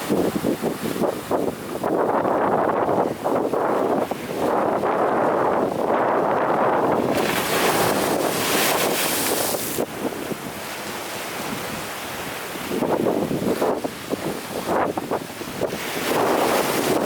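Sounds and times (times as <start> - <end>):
ocean surf roaring: 0.0 - 17.0
wave crashing with foam hiss: 7.1 - 9.9.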